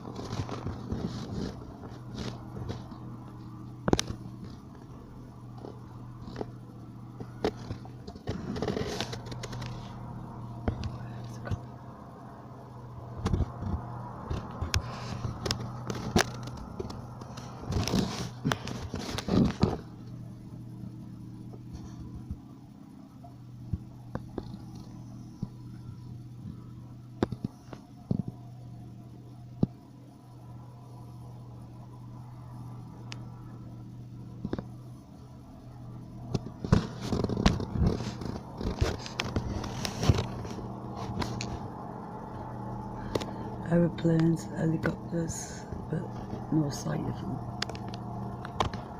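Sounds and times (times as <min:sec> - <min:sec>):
clicks knocks and scraping: 0:00.0 - 0:04.9, 0:05.5 - 0:06.6, 0:07.2 - 0:10.0, 0:13.2 - 0:20.2, 0:36.3 - 0:41.7
low aircraft drone: 0:00.0 - 0:48.9
low steady hum: 0:00.0 - 0:48.9.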